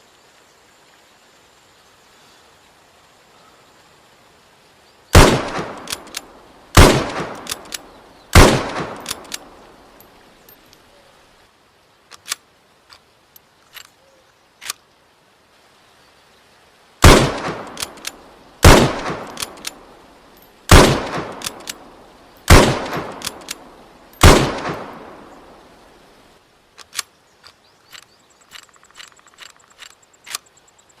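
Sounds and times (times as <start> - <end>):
rifle bolt clicks: 5.2 - 9.5, 12.1 - 13.0, 17.0 - 19.8, 20.7 - 21.8, 22.5 - 23.6, 26.8 - 30.4
rifle shots: 5.2 - 9.5, 17.0 - 19.8, 20.7 - 21.8, 22.5 - 25.3.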